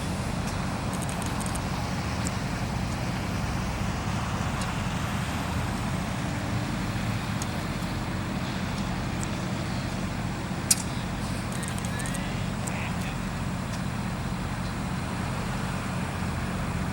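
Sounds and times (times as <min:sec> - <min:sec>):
heavy engine idling: 0:00.0 - 0:16.9
sharp click: 0:10.7 - 0:10.9.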